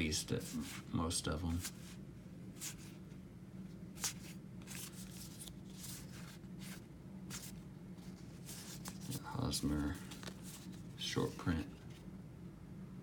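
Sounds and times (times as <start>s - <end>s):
low steady hum: 0.0s - 13.0s
cards swishing over cards: 1.5s - 2.0s, 2.6s - 3.0s, 4.0s - 12.0s.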